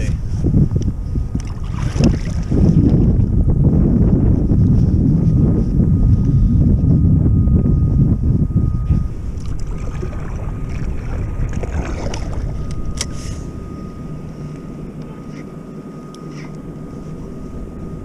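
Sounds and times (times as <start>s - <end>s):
wind gusting on microphone: 0.0s - 18.0s
water splashing against kayak hull: 1.4s - 3.2s, 9.3s - 12.8s.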